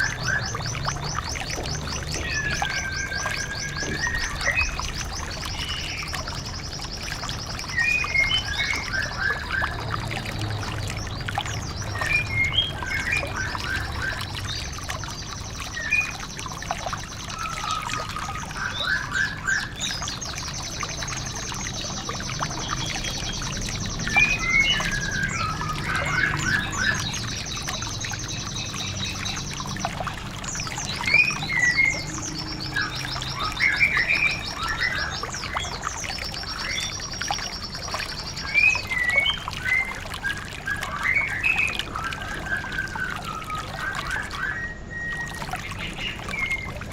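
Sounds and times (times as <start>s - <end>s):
bird chirps: 0.0s - 9.9s, 10.6s - 46.9s
songbird trills: 0.0s - 46.9s
water trickling: 0.0s - 46.9s.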